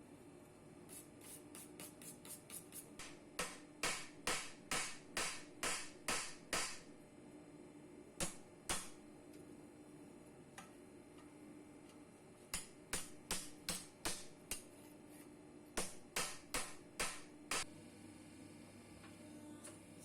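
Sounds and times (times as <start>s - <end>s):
hammer tapping on anvil: 3.0s - 6.9s, 8.2s - 9.0s, 12.5s - 14.7s, 15.8s - 17.7s.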